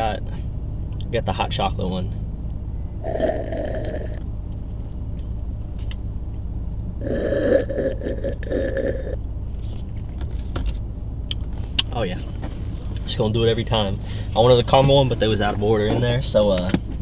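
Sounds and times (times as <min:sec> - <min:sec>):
person sipping a drink: 0:03.0 - 0:04.2, 0:07.0 - 0:09.2.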